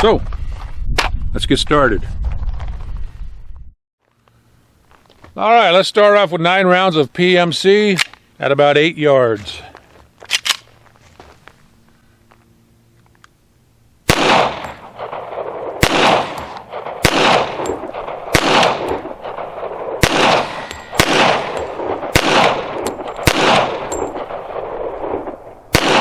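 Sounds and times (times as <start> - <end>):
pistol shots with echo: 14.1 - 26.0.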